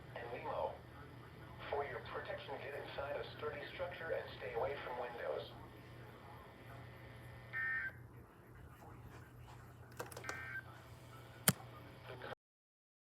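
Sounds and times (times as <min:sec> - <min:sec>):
clicks: 0:09.9 - 0:10.4.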